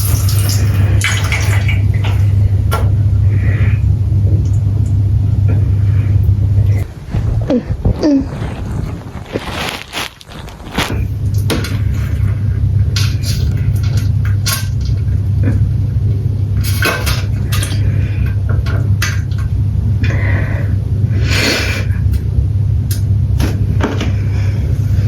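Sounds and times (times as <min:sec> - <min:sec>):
stomach gurgling: 0:00.0 - 0:16.0
stomach rumbling: 0:00.0 - 0:16.5
stomach clicks: 0:06.7 - 0:11.4.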